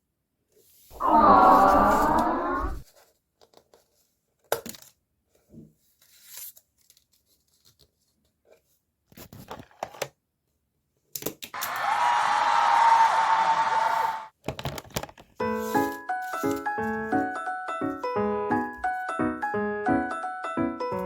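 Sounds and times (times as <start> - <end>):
paper rustling and crinkling: 2.8 - 10.0, 14.4 - 17.2.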